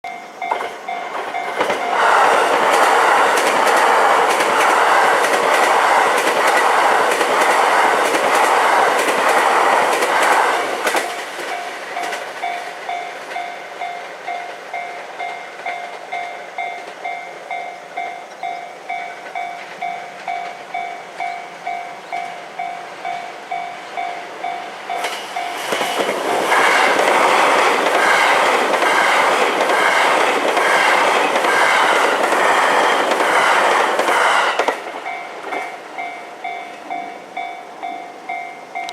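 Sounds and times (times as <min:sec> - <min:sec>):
level crossing alarm ringing: 0:00.0 - 0:02.8
electric trains passing over rails: 0:00.0 - 0:38.9.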